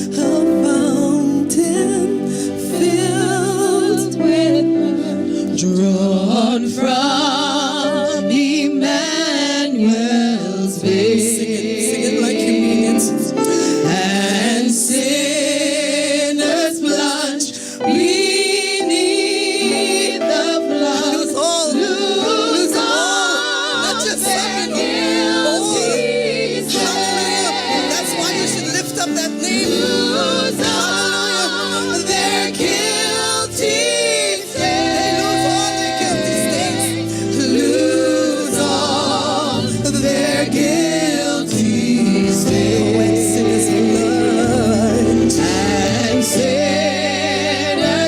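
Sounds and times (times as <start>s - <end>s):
gospel voices singing: 0.0s - 48.0s
sustained instrumental chords: 17.8s - 48.0s.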